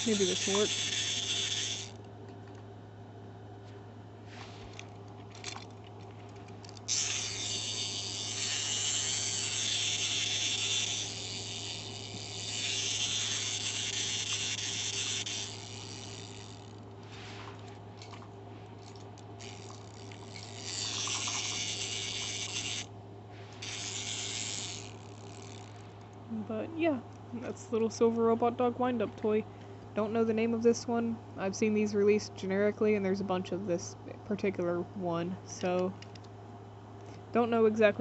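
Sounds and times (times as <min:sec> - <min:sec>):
toy clicks: 0:00.0 - 0:02.0, 0:06.7 - 0:16.7, 0:19.4 - 0:22.9, 0:23.6 - 0:25.7
wind-up toy gears whirring: 0:00.0 - 0:02.0, 0:06.6 - 0:16.9, 0:18.8 - 0:22.9, 0:23.6 - 0:25.9.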